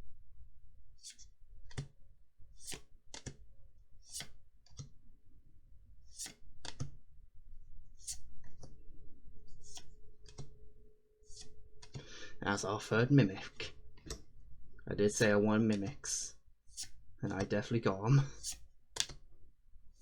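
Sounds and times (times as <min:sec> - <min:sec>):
cards clicking: 0:02.6 - 0:03.4, 0:04.1 - 0:04.9, 0:06.1 - 0:06.9, 0:09.6 - 0:10.5, 0:11.3 - 0:12.1, 0:18.4 - 0:19.2.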